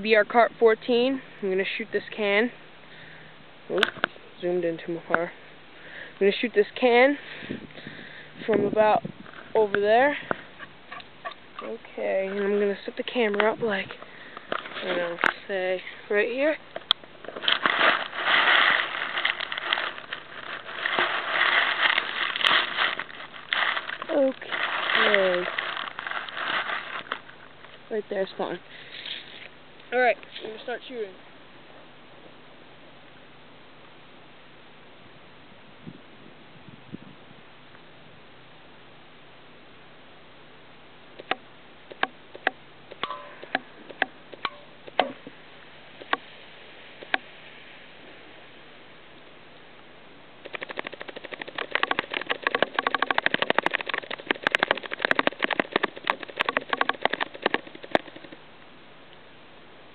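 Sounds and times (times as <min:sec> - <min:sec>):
pellet striking metal can: 0:43.0 - 0:45.2.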